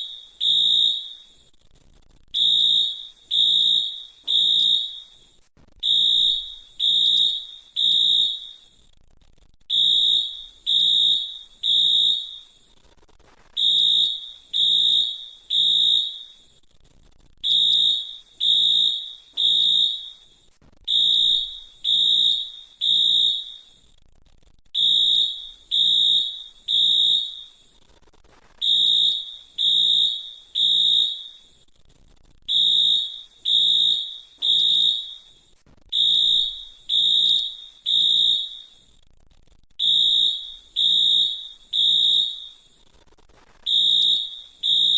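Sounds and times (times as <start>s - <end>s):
fire alarm beeps: 0.0s - 1.4s, 2.4s - 5.2s, 5.8s - 8.7s, 9.7s - 12.6s, 13.6s - 16.5s, 17.4s - 23.8s, 24.8s - 27.7s, 28.6s - 31.6s, 32.5s - 38.8s, 39.8s - 42.8s, 43.7s - 44.9s.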